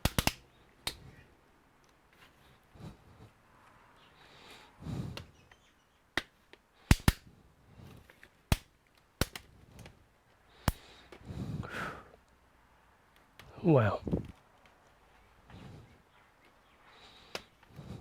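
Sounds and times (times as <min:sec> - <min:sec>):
plastic case clicks and snaps: 0:00.0 - 0:00.4, 0:08.5 - 0:09.9.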